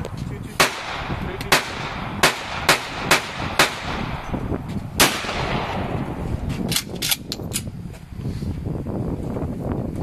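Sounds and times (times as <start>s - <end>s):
loud gunshot: 0.6s - 4.3s, 5.0s - 6.2s.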